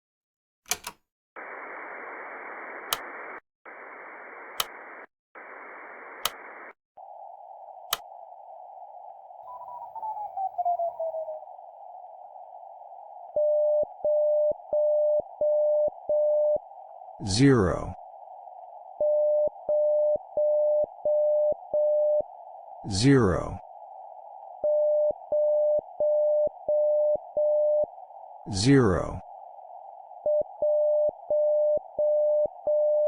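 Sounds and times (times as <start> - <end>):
clicks: 0.7 - 1.0, 2.7 - 3.4, 4.4 - 5.1, 6.0 - 6.8, 7.9 - 8.1
radio static hiss: 1.4 - 9.5, 16.8 - 18.1, 22.6 - 23.8, 28.3 - 29.4.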